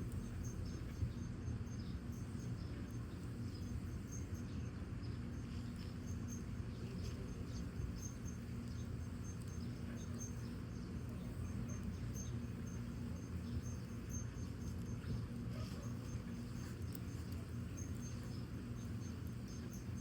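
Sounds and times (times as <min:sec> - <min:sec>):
firewood burning with crackles: 0:00.0 - 0:20.0
low steady rumble: 0:00.0 - 0:20.0.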